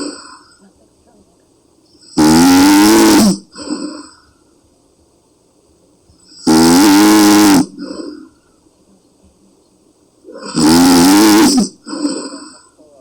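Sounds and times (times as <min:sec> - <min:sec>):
woman snoring loudly: 0:02.1 - 0:04.1, 0:06.4 - 0:08.3, 0:10.3 - 0:12.6
soft breath: 0:07.7 - 0:09.0, 0:11.8 - 0:13.0.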